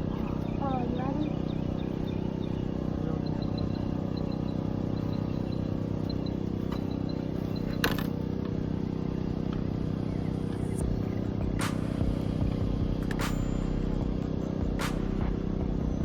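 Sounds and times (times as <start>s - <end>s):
faint high chirps: 0.0s - 7.9s
low outdoor rumble: 0.0s - 16.0s
sharp click: 11.6s - 12.0s.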